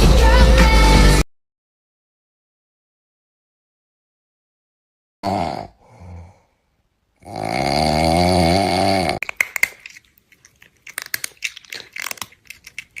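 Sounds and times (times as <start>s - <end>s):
crunching and chewing clicks: 9.2s - 13.0s.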